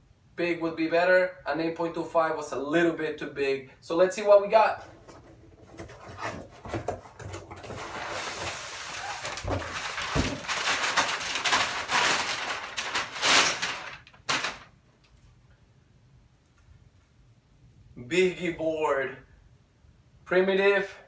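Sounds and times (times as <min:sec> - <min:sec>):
packaging rustling and crinkling: 0:05.0 - 0:14.8.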